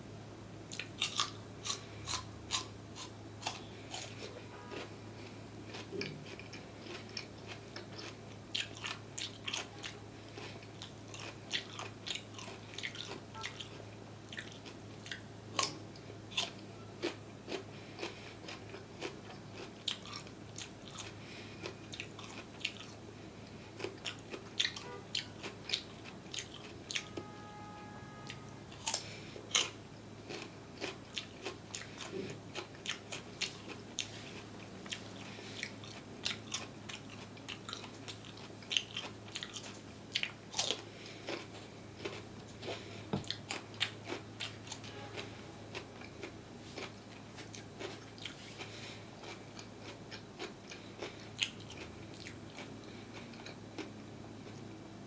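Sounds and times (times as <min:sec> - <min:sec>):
chewing crunchy food: 0:00.7 - 0:27.2, 0:28.2 - 0:54.8
low hum: 0:26.7 - 0:30.8.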